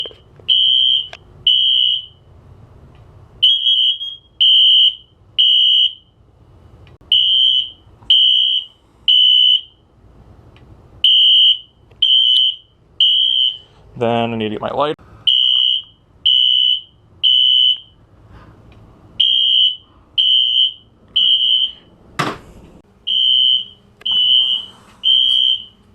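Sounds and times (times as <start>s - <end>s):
fire alarm beeping: 0.0s - 2.2s, 3.4s - 6.2s, 7.1s - 9.8s, 11.0s - 13.7s, 15.3s - 18.0s, 19.2s - 21.9s, 23.0s - 25.8s.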